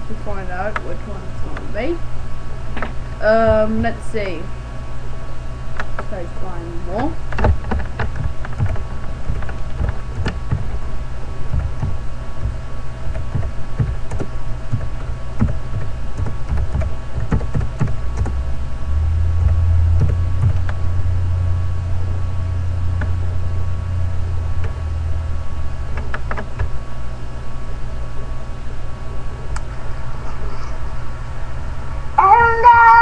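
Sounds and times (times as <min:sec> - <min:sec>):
steady low hum: 0:00.0 - 0:33.0
computer keyboard typing: 0:11.5 - 0:18.4.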